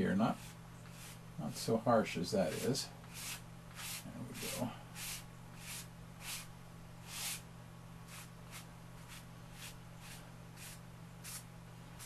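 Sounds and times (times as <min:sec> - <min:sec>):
steady low hum: 0:00.0 - 0:12.0
chalk scraping on board: 0:00.3 - 0:01.2, 0:02.4 - 0:07.4, 0:08.1 - 0:11.4.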